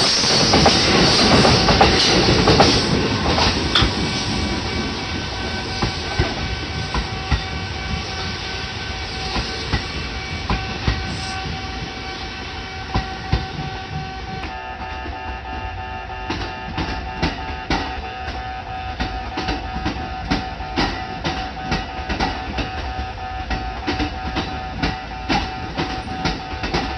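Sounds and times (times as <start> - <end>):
train wheels clicking over rail joints: 0.0 - 15.4, 16.2 - 26.9
crossing warning bell ringing: 12.8 - 26.9.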